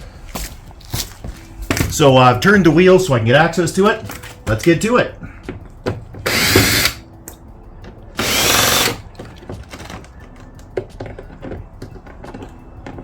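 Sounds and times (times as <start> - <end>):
power drill running: 6.2 - 7.0, 8.2 - 9.0.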